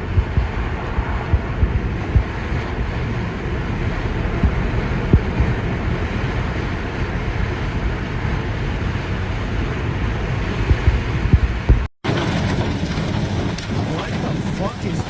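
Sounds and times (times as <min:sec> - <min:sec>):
low gust thumps: 0:00.0 - 0:08.4, 0:09.4 - 0:11.9
wind buffeting microphone: 0:00.0 - 0:15.0.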